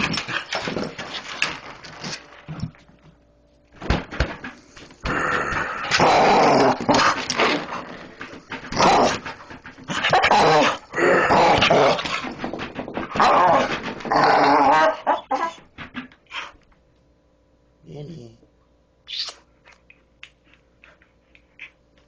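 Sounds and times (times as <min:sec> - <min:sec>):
dog growling: 0:05.0 - 0:12.4, 0:13.2 - 0:15.6.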